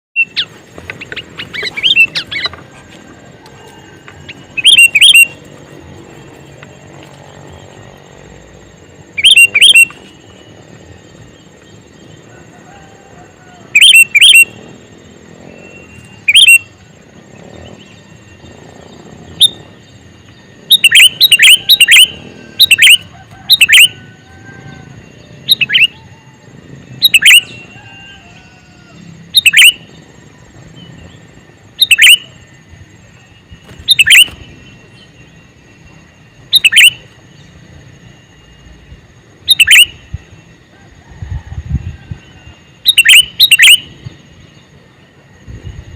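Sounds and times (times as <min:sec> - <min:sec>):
bulbul chirping calls: 0:03.5 - 0:05.5, 0:09.1 - 0:12.0, 0:13.7 - 0:14.7, 0:15.5 - 0:16.8, 0:20.6 - 0:24.1, 0:24.7 - 0:26.2, 0:27.0 - 0:30.0, 0:30.8 - 0:32.4, 0:33.8 - 0:35.4, 0:36.4 - 0:37.5, 0:39.4 - 0:40.4, 0:42.2 - 0:44.2.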